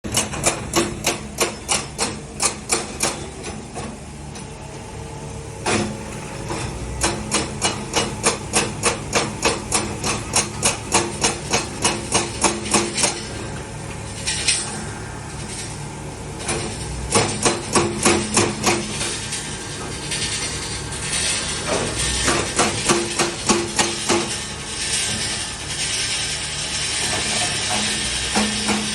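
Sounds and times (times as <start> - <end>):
diesel engine humming: 0.0 - 23.4.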